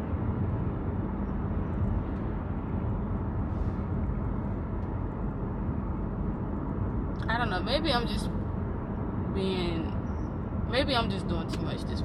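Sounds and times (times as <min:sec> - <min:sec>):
vehicle road noise rumble: 0:00.0 - 0:12.0.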